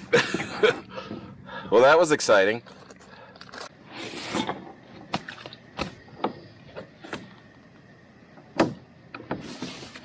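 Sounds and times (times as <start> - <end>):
sharp knocks and clunks: 8.4 - 9.5.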